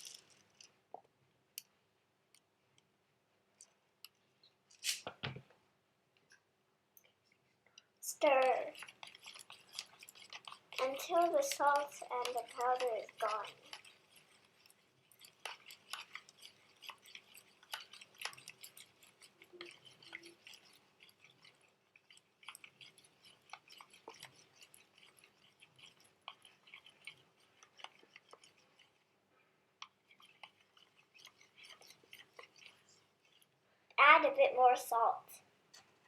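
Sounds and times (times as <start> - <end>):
spoon stirring in container: 7.0 - 29.2, 29.8 - 33.6.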